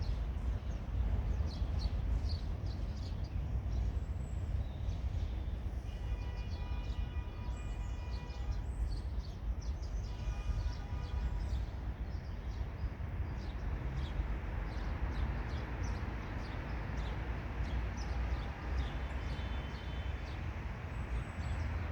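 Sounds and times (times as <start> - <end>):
freight train rumbling: 0.0 - 5.9.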